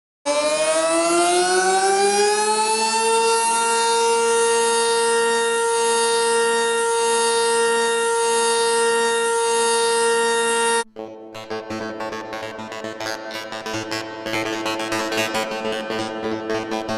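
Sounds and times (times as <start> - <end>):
siren winding up and wailing: 0.3 - 10.9.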